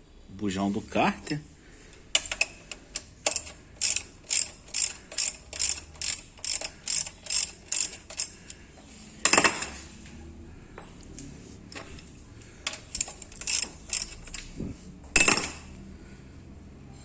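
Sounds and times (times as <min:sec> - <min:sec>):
ratchet wrench clicking: 0:02.1 - 0:08.6, 0:12.7 - 0:14.5, 0:15.2 - 0:15.8.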